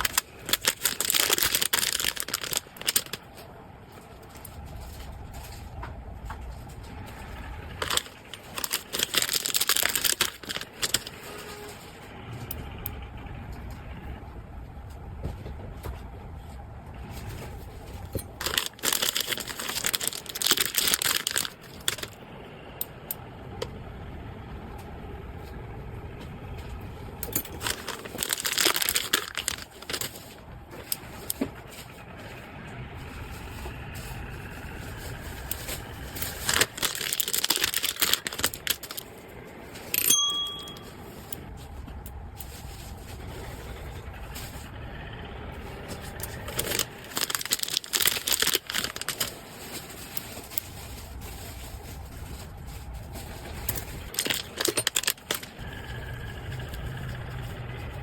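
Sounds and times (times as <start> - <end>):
packaging crinkling: 0.0 - 5.6, 6.5 - 11.9, 17.2 - 22.2, 27.2 - 32.4, 33.0 - 41.3, 45.9 - 55.6
faint low rumble: 0.0 - 58.0.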